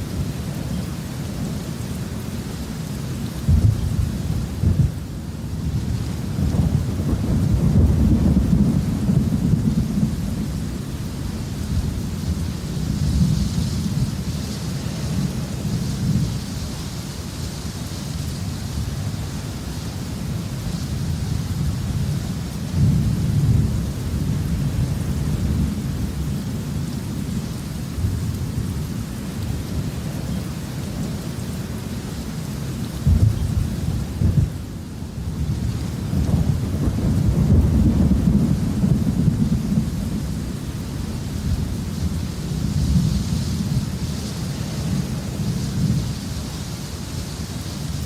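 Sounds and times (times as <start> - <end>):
steady rain: 0.0 - 48.0
thunder rumbling: 3.4 - 16.5, 33.0 - 46.5
sharp thunder cracks: 3.5 - 5.0, 33.0 - 34.6.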